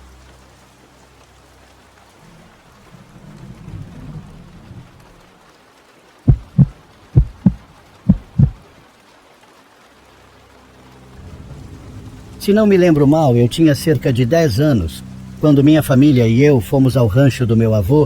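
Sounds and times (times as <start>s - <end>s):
steady rain: 0.0s - 18.0s
thunder rumble: 2.2s - 5.4s, 6.3s - 8.7s
heartbeat thumps: 6.3s - 8.7s.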